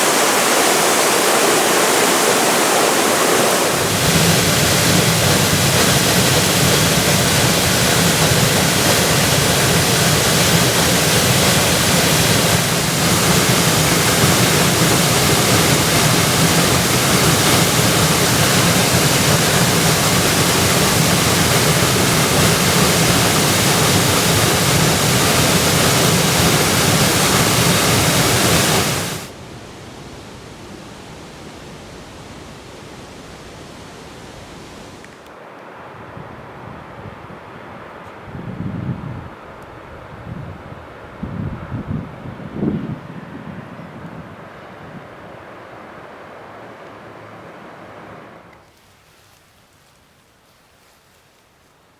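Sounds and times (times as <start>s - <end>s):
waterfall rushing: 0.0s - 29.6s.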